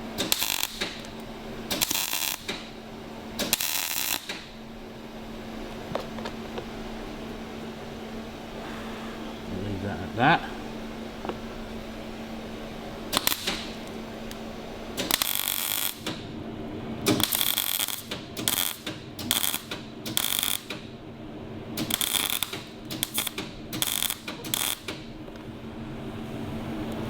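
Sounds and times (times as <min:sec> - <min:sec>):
welder crackling: 0:00.2 - 0:02.7, 0:03.4 - 0:04.4, 0:13.1 - 0:14.4, 0:15.0 - 0:16.2, 0:17.0 - 0:20.8, 0:21.8 - 0:25.0.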